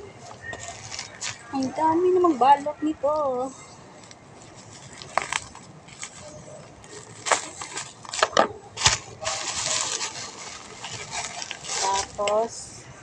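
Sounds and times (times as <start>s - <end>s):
plastic wrapping crackling: 0.1s - 2.4s, 3.9s - 12.5s.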